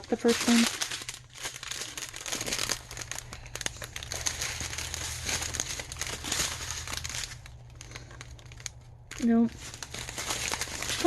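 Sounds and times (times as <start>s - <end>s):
plastic bags crinkling: 0.0s - 11.0s.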